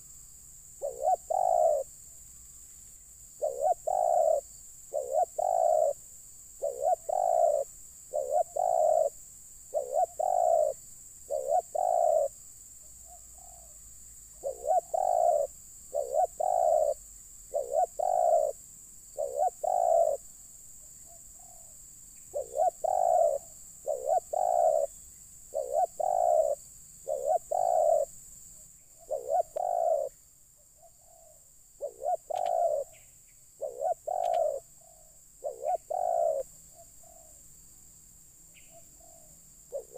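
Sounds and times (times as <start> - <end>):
dove cooing: 0.8 - 1.9, 3.4 - 6.0, 6.6 - 12.4, 14.4 - 18.6, 19.2 - 20.2, 21.1 - 21.7, 22.3 - 28.1, 29.0 - 30.1, 30.8 - 33.0, 33.6 - 37.4, 38.6 - 39.9.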